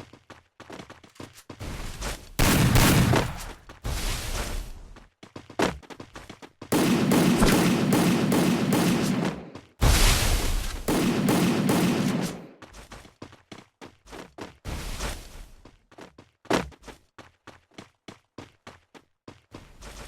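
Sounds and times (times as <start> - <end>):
single gunshots: 2.4 - 3.7, 6.7 - 12.5
video game automatic gunfire: 2.4 - 3.7, 6.7 - 12.6.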